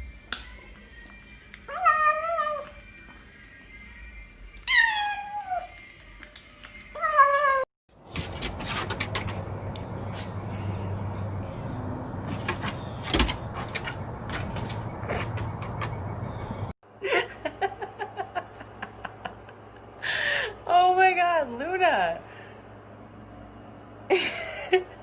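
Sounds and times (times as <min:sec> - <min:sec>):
cat meowing: 0:04.6 - 0:05.7
knocks and clicks: 0:12.2 - 0:16.7.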